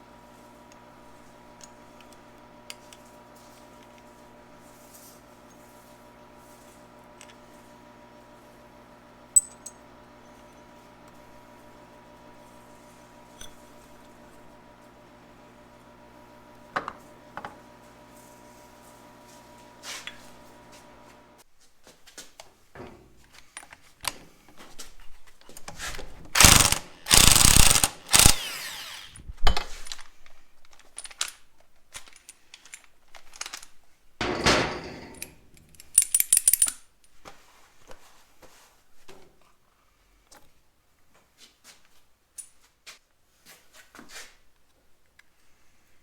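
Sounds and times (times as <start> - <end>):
metal tool clicks and clinks: 9.4 - 9.8, 26.4 - 29.2, 35.1 - 36.8
rattle of hits: 26.4 - 29.2
power tool bursts: 26.4 - 29.4.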